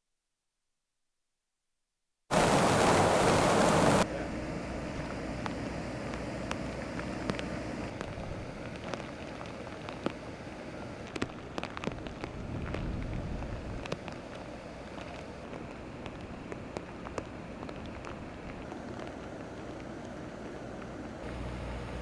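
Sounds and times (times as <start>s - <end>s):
rain falling: 2.3s - 4.0s, 6.7s - 21.8s
sharp raindrop ticks: 5.0s - 21.2s.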